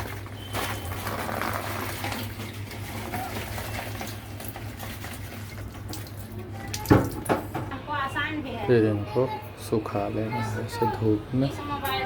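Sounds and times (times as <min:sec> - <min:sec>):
water splashing and running: 0:00.0 - 0:07.3.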